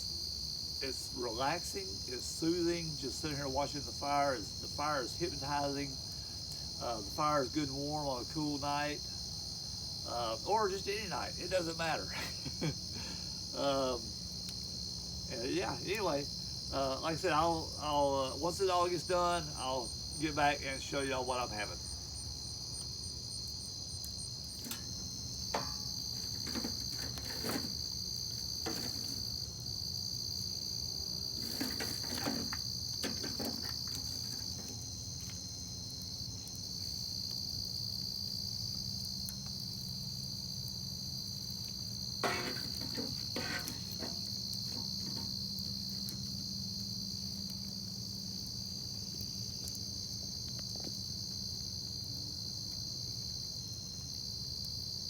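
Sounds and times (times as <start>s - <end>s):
crickets chirping: 0.0s - 55.0s
campfire crackling and popping: 0.9s - 40.0s.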